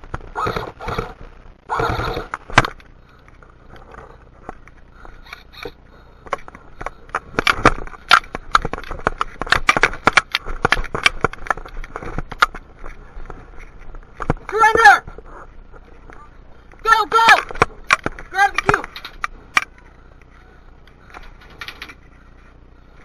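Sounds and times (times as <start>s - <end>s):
sharp clicks and snaps: 17.3s - 22.0s.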